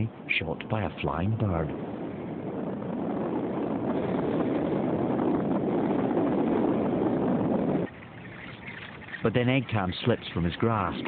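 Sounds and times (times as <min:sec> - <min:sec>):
wind rushing over microphone: 0:00.0 - 0:11.0.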